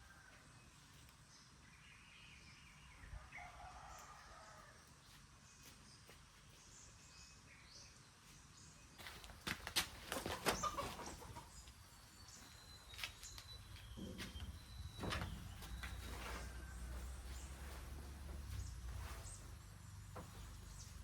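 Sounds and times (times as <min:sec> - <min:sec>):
chickens clucking: 0:09.8 - 0:12.0.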